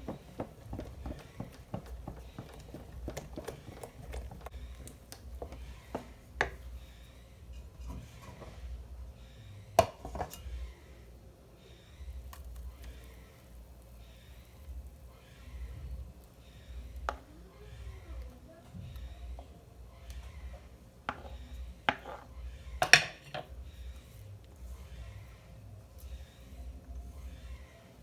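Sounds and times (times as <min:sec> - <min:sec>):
utensil tapping in mixing bowl: 0:00.0 - 0:06.9, 0:09.8 - 0:10.4, 0:21.1 - 0:22.2.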